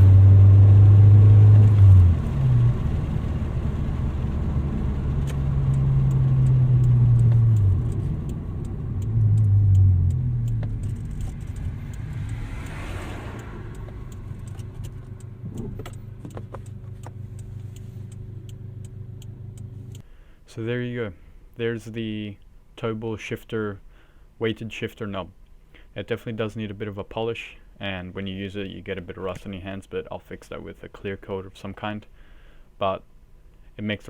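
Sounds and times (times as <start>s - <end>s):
car engine running: 0.0s - 20.0s.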